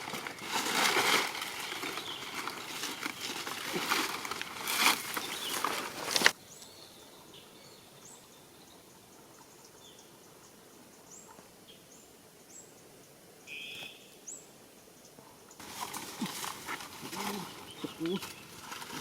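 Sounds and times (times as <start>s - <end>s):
scratchy rustling: 0.0s - 6.4s, 15.6s - 19.0s.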